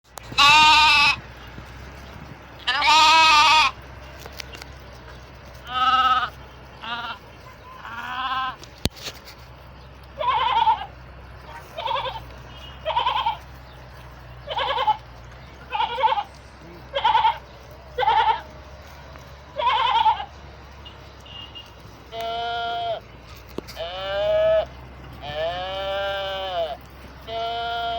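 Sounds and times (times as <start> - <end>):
sheep bleating: 0.2 - 1.2, 2.6 - 3.8, 5.6 - 8.7, 10.1 - 13.6, 14.3 - 18.6, 19.5 - 20.4, 22.1 - 23.1, 23.7 - 27.9.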